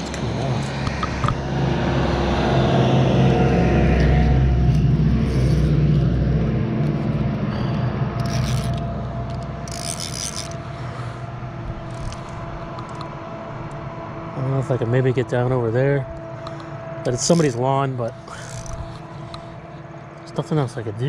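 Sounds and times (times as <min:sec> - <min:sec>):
vehicle passing by: 0:00.0 - 0:21.0.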